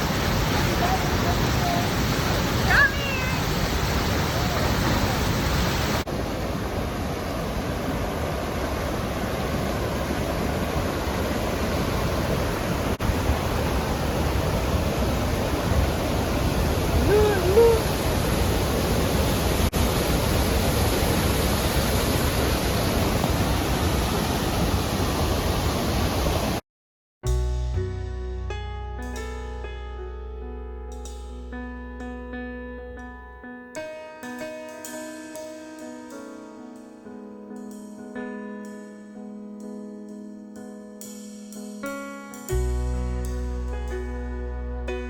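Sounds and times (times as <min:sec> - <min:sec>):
waterfall and river roar: 0:00.0 - 0:26.6.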